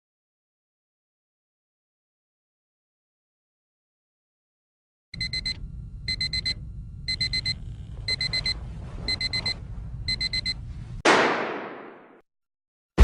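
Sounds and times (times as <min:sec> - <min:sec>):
alarm clock beeping: 0:05.2 - 0:10.6.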